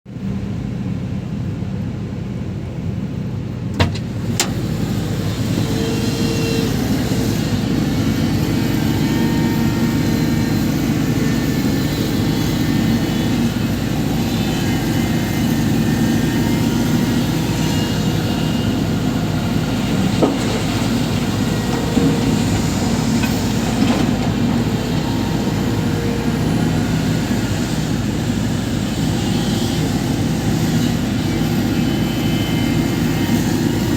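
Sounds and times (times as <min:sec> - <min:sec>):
excavator diesel engine running: 0:03.5 - 0:33.9
sharp knocks: 0:03.8 - 0:04.1.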